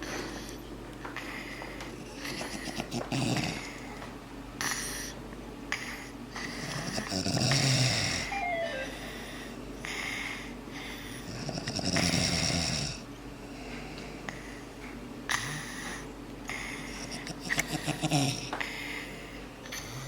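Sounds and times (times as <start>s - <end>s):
soft breathing: 0.0s - 7.0s, 8.8s - 11.3s, 13.4s - 17.8s, 18.5s - 20.0s
loud snoring: 6.8s - 8.3s
short falling whistle: 8.3s - 9.0s.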